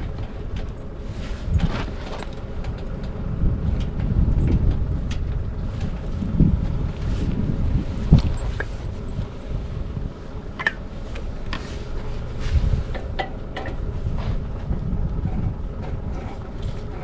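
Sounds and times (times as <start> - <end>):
wind buffeting microphone: 0.0 - 17.0
sharp clicks and knocks: 10.5 - 11.7, 12.9 - 13.9.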